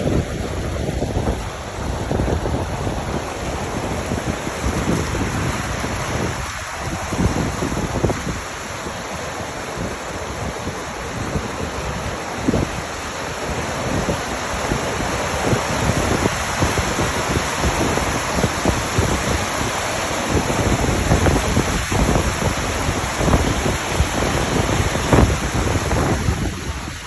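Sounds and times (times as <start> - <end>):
waterfall rushing: 0.0 - 27.0
wind buffeting microphone: 0.0 - 27.0.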